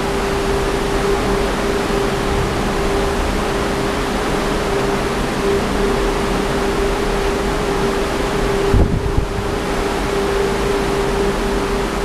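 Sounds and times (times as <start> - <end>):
strong wind buffeting microphone: 0.0 - 12.0
gust thumping microphone: 8.6 - 9.6.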